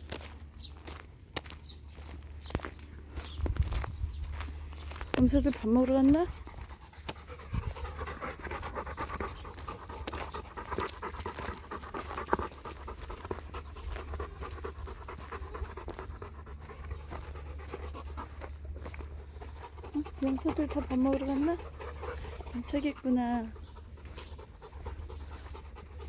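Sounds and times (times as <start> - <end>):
small scuffs and rustles: 0.0 - 26.0
dog panting: 5.3 - 26.0.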